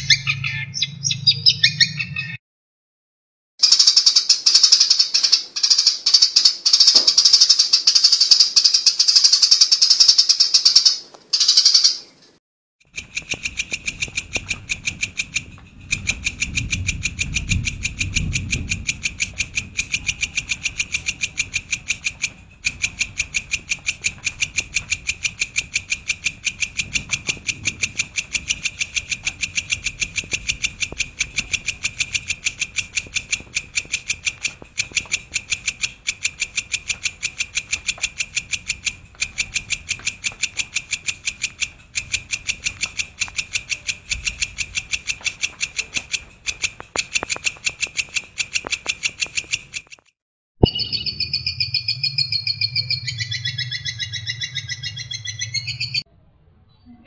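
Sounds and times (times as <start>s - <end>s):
songbird singing: 0.0s - 2.3s, 3.6s - 12.2s, 50.6s - 56.1s
sharp repeated bird notes: 0.0s - 2.4s, 3.6s - 50.0s, 50.6s - 56.1s.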